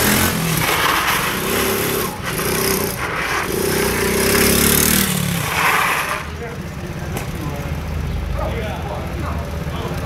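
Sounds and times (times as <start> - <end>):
quad bike engine revving: 0.0 - 6.4.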